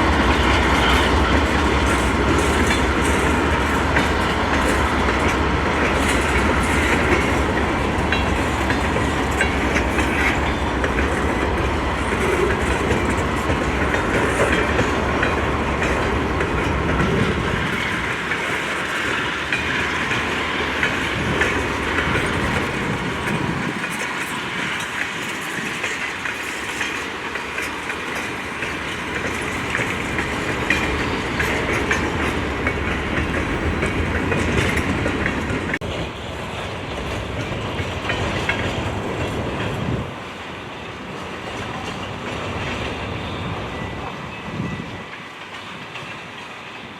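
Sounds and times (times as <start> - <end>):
clickety-clack over rail joints: 0.0 - 46.9
deep train rumble: 0.0 - 46.9
train wheels rolling: 0.0 - 46.9.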